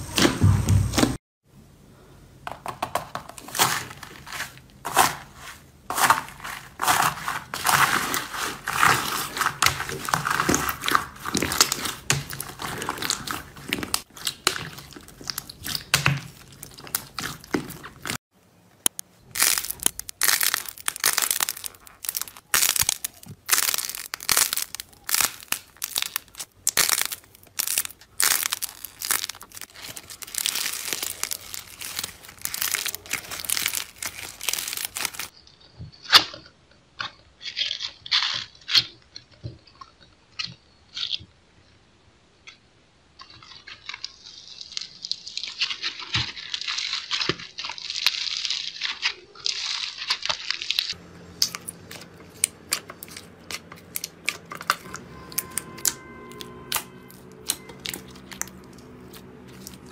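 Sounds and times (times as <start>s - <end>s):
slime crunching and crackling: 3.4s - 18.2s, 18.8s - 35.3s, 37.0s - 40.1s, 43.2s - 59.9s.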